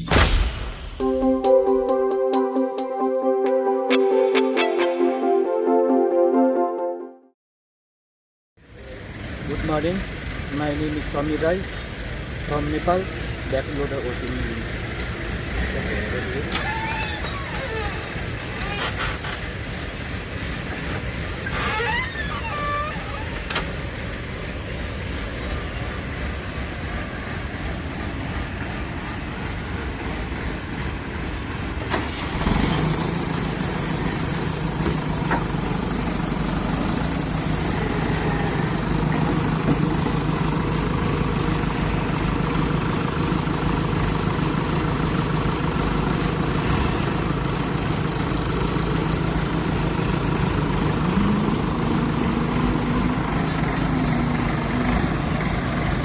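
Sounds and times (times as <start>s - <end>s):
diesel engine starting and running: 0.0s - 7.0s, 8.6s - 56.0s
high-pitched whine: 32.8s - 38.5s.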